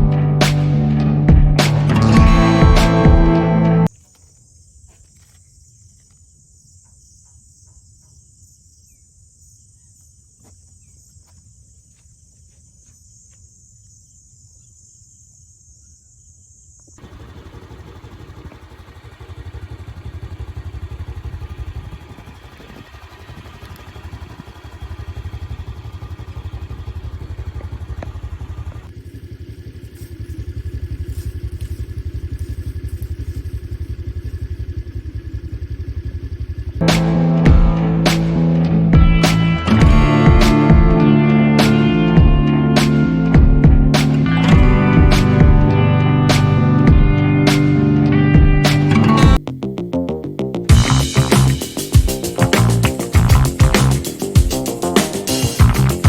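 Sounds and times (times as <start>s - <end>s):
vehicle engine rumble: 0.0s - 4.0s, 17.0s - 56.0s
high-pitched outdoor hiss: 28.7s - 37.4s, 50.7s - 56.0s.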